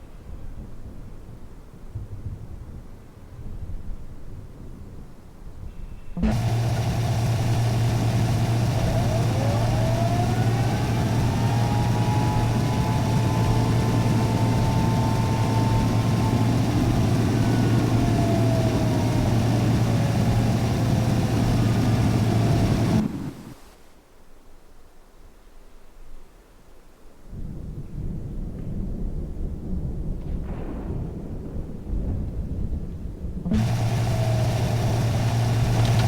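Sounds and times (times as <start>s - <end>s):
warning siren wailing: 6.2s - 23.6s, 33.5s - 36.0s
low hum: 6.2s - 23.7s.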